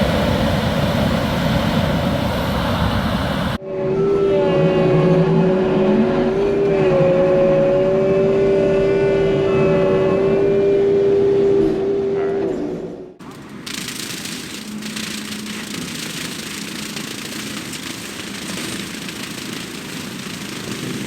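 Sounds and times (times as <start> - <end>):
track loader high whine: 0.0 - 12.3
rough rumbling machine noise: 13.2 - 21.0.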